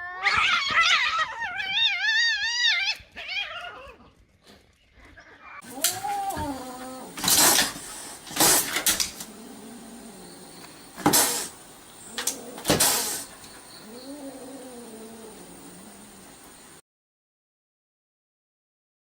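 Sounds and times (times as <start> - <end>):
cat meowing: 5.6 - 10.2
short noisy bursts: 7.1 - 9.3, 10.9 - 13.5.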